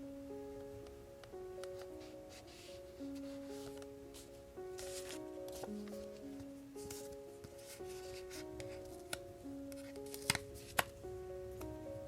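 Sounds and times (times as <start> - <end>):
soft background music: 0.0 - 12.0
paper rustling: 1.6 - 11.0.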